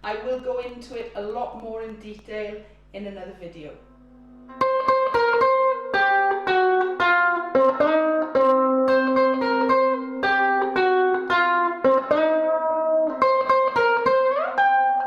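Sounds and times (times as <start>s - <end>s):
ukulele plucked notes: 4.0s - 15.0s.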